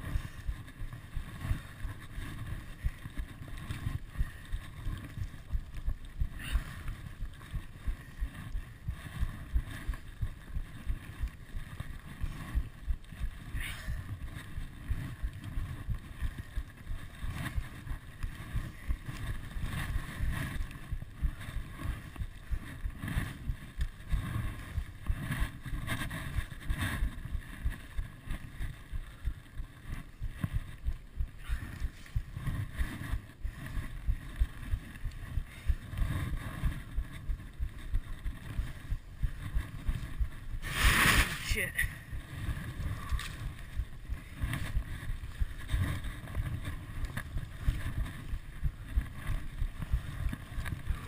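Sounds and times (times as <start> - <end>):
wind rumbling on microphone: 0.0 - 51.0
snowshoe steps in deep snow: 40.6 - 42.0.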